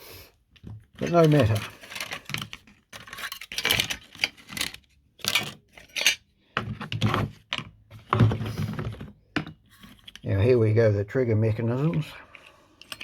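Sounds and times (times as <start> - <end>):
metal parts clinking and rattling: 1.0 - 6.3, 11.9 - 13.0.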